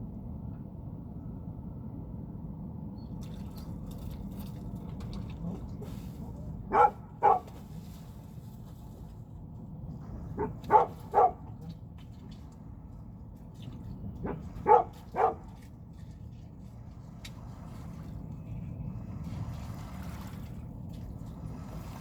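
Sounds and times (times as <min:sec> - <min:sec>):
dog barking: 0:06.7 - 0:07.6, 0:10.4 - 0:11.5, 0:14.2 - 0:15.5.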